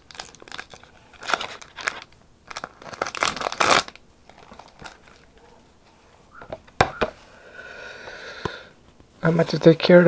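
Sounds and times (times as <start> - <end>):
packaging crinkling and tearing: 0.0 - 5.4.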